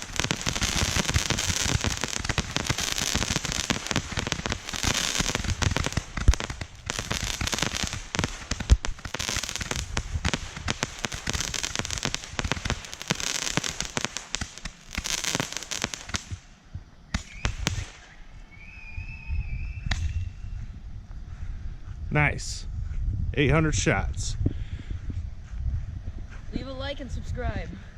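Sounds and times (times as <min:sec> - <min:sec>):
fireworks popping and crackling: 0:00.0 - 0:18.2, 0:19.9 - 0:20.2.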